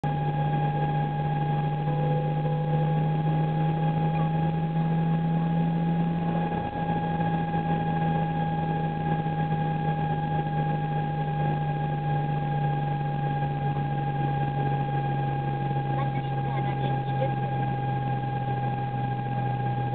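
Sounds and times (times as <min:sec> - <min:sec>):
car steady whine: 0:00.0 - 0:19.9
constant low drone: 0:00.0 - 0:19.9.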